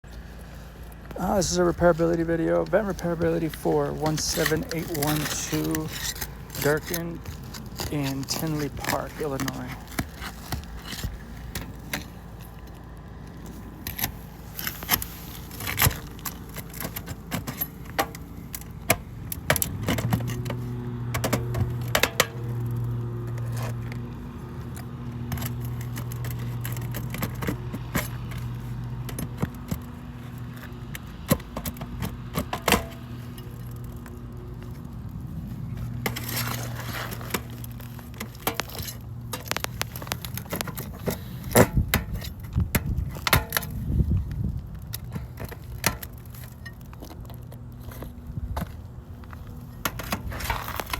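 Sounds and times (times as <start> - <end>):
low mechanical hum: 0.0 - 50.9
hand tools clicking on shingles: 1.0 - 50.9.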